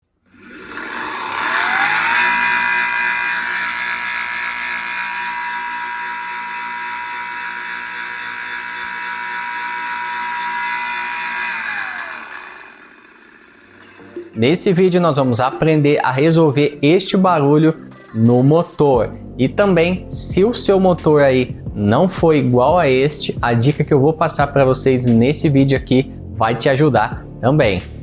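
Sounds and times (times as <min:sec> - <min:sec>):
gate motor whining: 0:00.1 - 0:14.4.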